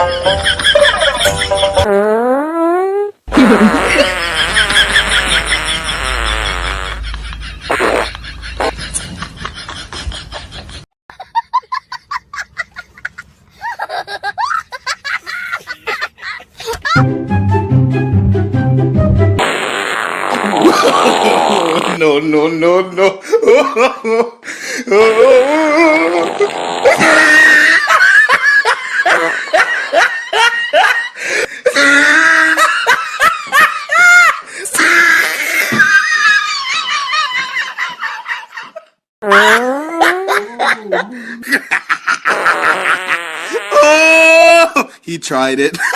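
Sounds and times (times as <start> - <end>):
background noise: 0.0 - 17.0, 19.8 - 45.9
person laughing: 3.3 - 17.0, 20.4 - 21.9, 23.0 - 31.0, 31.7 - 45.0.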